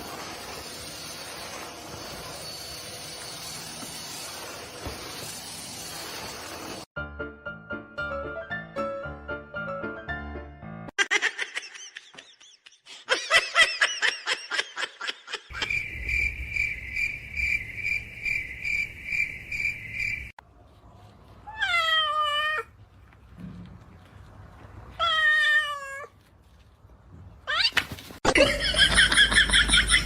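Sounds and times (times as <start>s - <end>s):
cat meowing: 21.4s - 22.7s, 24.9s - 26.1s.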